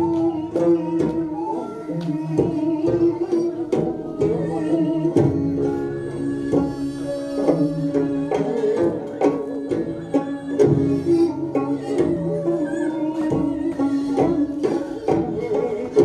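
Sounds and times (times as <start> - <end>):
drum strokes: 0.0 - 16.0.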